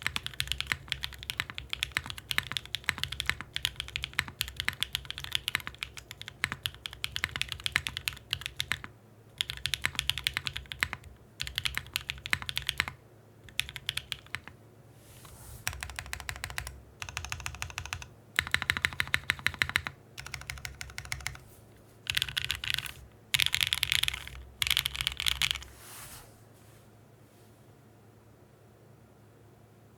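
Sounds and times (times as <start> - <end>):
mechanical keyboard typing: 0.0 - 14.6, 15.6 - 21.4, 22.1 - 25.7.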